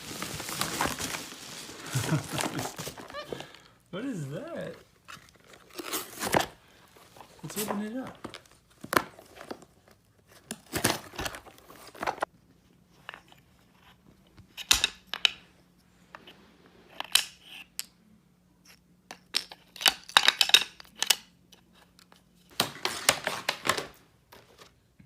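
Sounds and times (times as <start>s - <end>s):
packaging tearing and crinkling: 0.0s - 3.5s, 5.1s - 6.6s, 22.5s - 24.0s.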